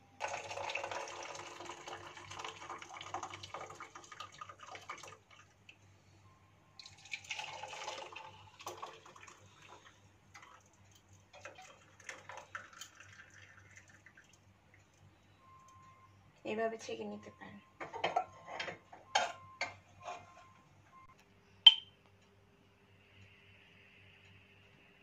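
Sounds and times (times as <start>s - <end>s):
liquid pouring through a strainer: 0.2s - 5.5s, 6.8s - 14.4s
liquid dripping: 6.8s - 15.0s.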